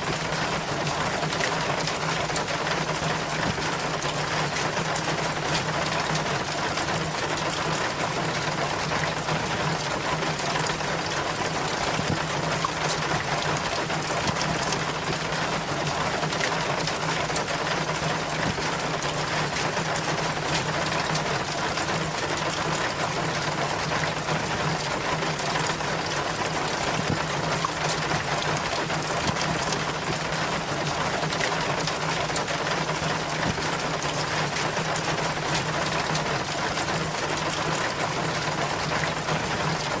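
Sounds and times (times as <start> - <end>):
small drips pattering: 0.0 - 40.0
water trickling down rain chain: 0.0 - 40.0.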